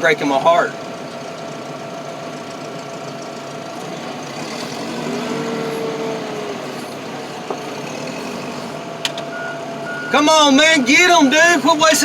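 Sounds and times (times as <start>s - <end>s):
car engine revving: 3.5s - 11.1s.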